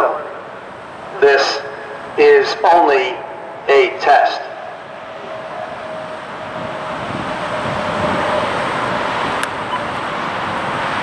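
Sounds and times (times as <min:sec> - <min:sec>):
road traffic rushing past: 0:00.0 - 0:11.0.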